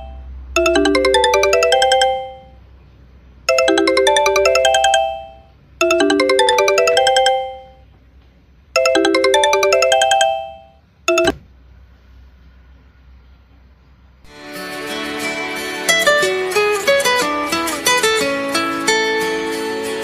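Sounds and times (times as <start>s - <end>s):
phone ringtone melody: 0.0s - 2.6s, 3.5s - 7.8s, 8.8s - 11.4s.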